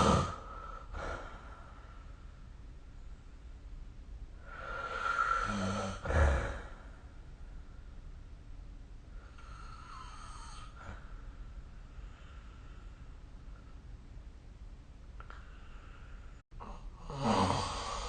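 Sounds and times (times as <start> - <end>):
person snoring: 0.0 - 1.3, 4.4 - 6.8, 9.4 - 11.0, 16.6 - 18.0
faint breath: 9.1 - 13.8, 15.2 - 16.7.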